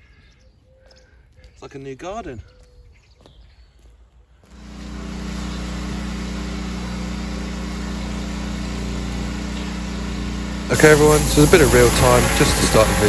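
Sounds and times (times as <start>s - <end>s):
pressure washer engine running: 4.5s - 13.0s.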